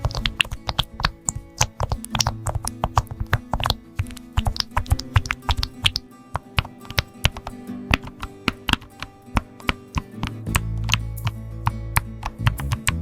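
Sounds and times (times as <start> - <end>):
background music: 0.0 - 13.0
fast typing on keyboard: 0.0 - 13.0.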